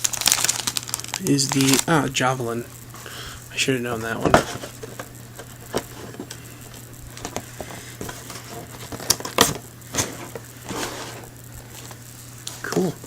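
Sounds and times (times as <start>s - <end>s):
steady low hum: 0.0s - 13.0s
cardboard boxes tapping and rustling: 4.0s - 6.4s.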